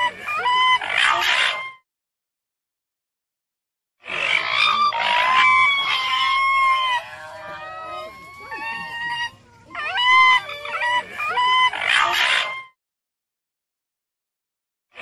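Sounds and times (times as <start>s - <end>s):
raccoon dog calling: 4.1s - 12.7s.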